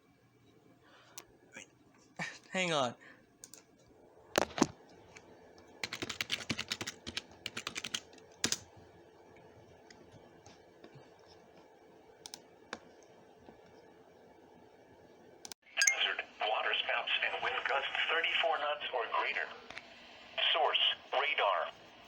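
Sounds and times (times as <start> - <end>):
typing on computer keyboard: 5.8 - 8.7.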